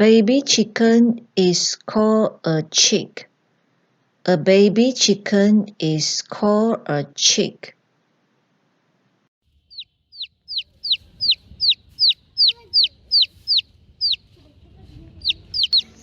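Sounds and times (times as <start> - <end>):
chick peeping: 9.6 - 16.0.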